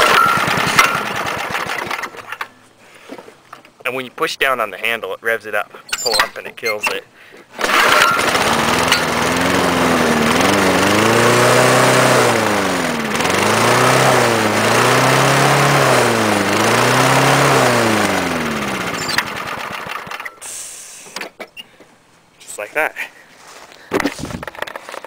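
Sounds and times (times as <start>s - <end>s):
lawn mower engine revving: 0.0s - 2.5s, 6.0s - 20.4s.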